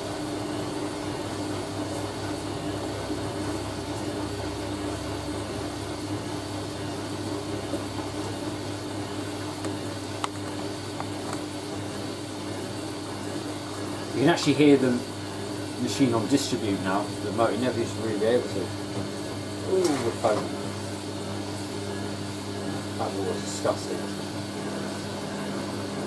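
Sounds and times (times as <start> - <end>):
washing machine humming: 0.0 - 26.0.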